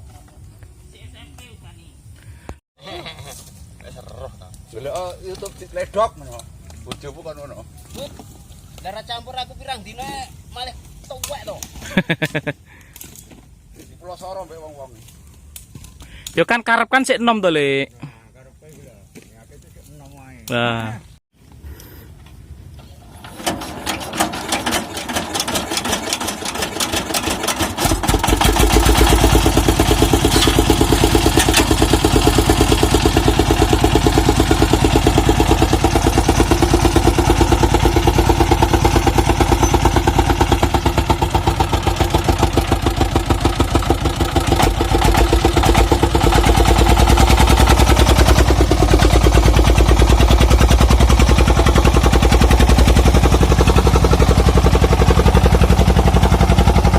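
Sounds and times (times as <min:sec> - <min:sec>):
single-cylinder diesel engine running: 0:22.7 - 0:56.9.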